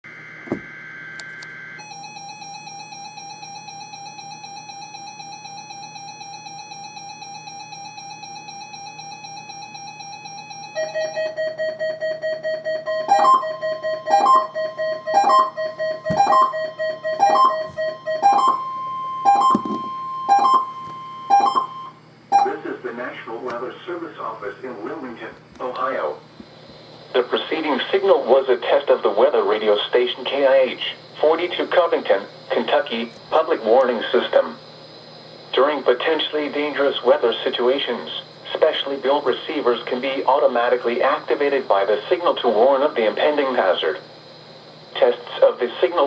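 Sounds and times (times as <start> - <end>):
beeping: 0.1 - 22.7
rapidly pulsing alert tone: 1.6 - 22.6
data tones burst: 3.4 - 22.7.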